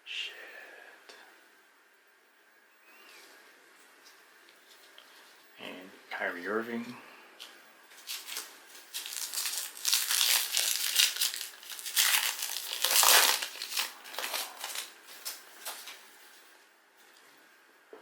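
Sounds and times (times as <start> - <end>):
foil wrapper crinkling: 7.9 - 16.0.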